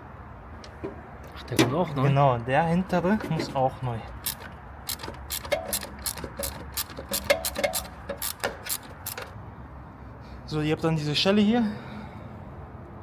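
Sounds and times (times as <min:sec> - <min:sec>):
hand ratchet clicking: 0:03.2 - 0:09.4.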